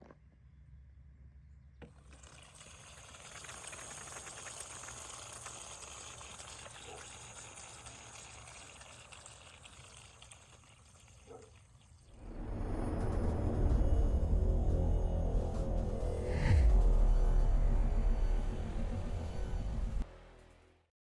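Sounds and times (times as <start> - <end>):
water spraying from spigot: 2.0 - 12.2.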